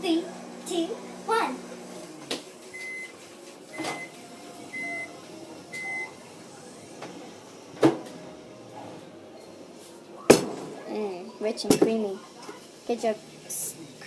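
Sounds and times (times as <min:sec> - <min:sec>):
microwave oven beeping: 0:02.6 - 0:11.4.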